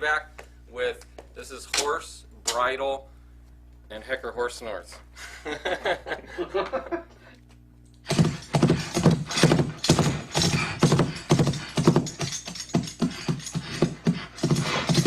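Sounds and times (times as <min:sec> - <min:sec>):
bridle jingle: 0:08.1 - 0:15.0
hoofsteps: 0:08.1 - 0:15.0
horse snorting: 0:08.1 - 0:15.0.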